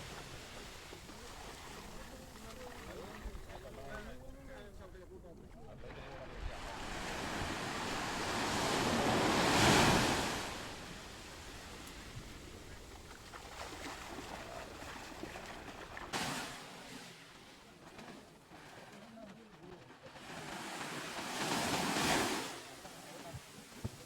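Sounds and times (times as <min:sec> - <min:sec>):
sea waves breaking: 0:00.0 - 0:24.0.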